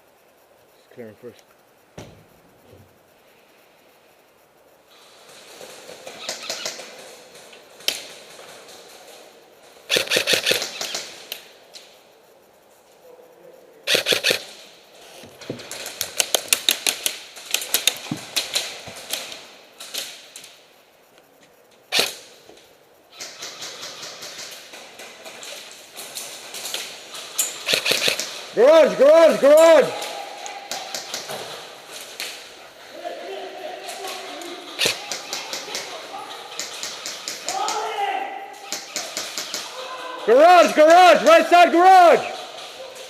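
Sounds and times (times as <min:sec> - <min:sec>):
airsoft guns firing: 0:05.0 - 0:11.6, 0:13.9 - 0:14.7, 0:21.9 - 0:22.4, 0:23.1 - 0:32.9, 0:33.8 - 0:43.0.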